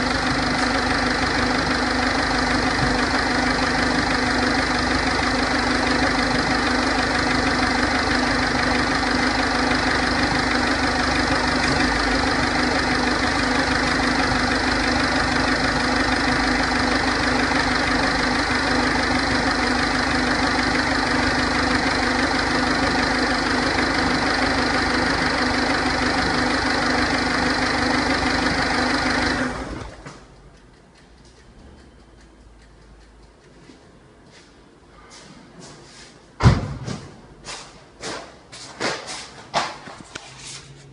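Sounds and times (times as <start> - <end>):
diesel engine idling: 0.0 - 30.8.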